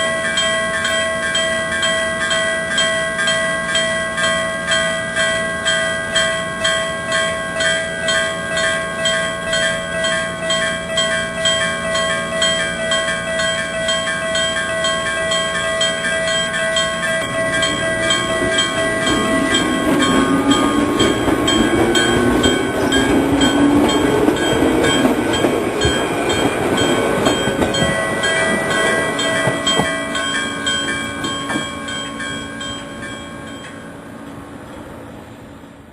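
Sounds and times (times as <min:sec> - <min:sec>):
level-crossing warning bell: 0:00.0 - 0:35.2
train rumble with whine: 0:03.3 - 0:35.9.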